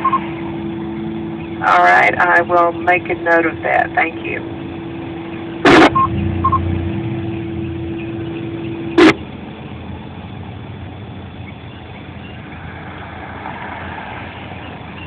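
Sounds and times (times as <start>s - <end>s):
short beeps: 0.0s - 0.3s, 5.6s - 9.2s
radio receiver hum: 0.0s - 13.2s
steady background noise: 0.0s - 15.0s
radio static crackle: 1.6s - 6.7s, 8.3s - 9.3s.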